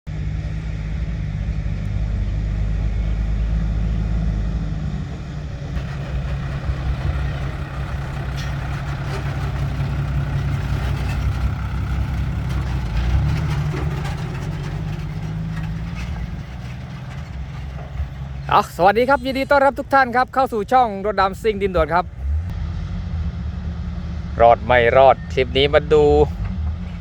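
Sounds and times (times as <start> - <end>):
diesel truck engine running: 0.0 - 27.0
rattles and clicks: 5.6 - 20.5.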